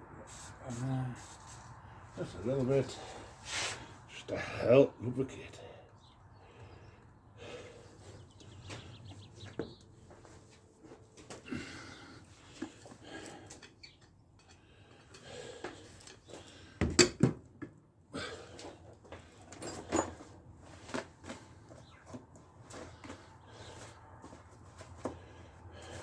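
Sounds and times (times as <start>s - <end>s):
tools and metal parts clicking: 13.4s - 15.3s, 19.4s - 20.3s.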